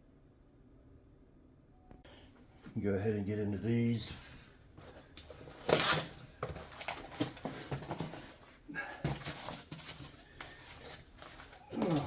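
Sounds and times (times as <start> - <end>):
packaging rustling: 4.8 - 12.0
packaging tearing: 5.4 - 7.4.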